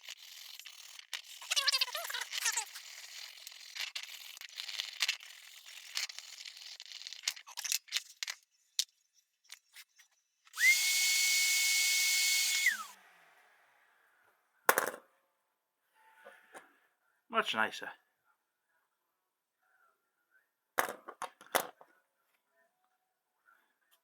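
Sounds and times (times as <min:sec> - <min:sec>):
small vacuum cleaner running: 0:10.5 - 0:13.2.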